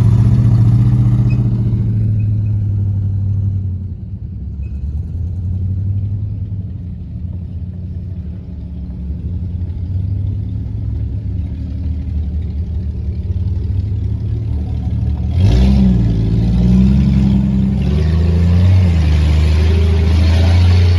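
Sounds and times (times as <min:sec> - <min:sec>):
vehicle engine revving: 0:12.0 - 0:20.9.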